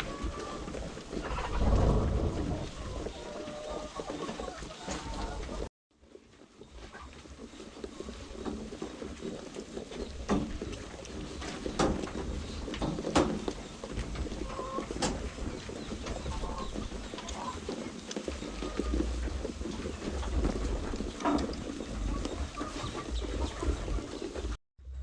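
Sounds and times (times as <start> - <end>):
chickens clucking: 0.0 - 5.7, 6.8 - 24.6
low rumble: 1.2 - 3.1.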